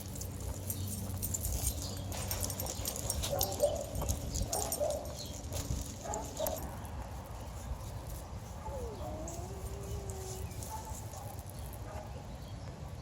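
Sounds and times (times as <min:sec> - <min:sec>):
dog whining: 0:08.6 - 0:10.9.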